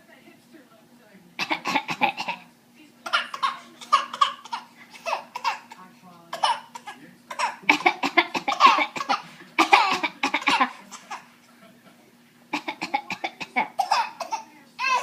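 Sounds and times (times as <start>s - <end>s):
toddler imitation coughs: 1.4s - 2.4s, 3.0s - 11.2s, 12.6s - 15.0s.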